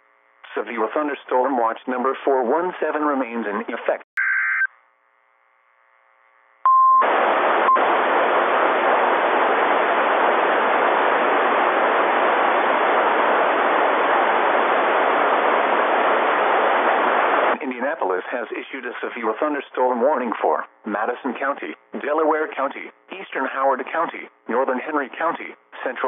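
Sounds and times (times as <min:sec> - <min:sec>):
data burst noise: 0:06.7 - 0:17.6
loud static hiss: 0:07.0 - 0:26.0.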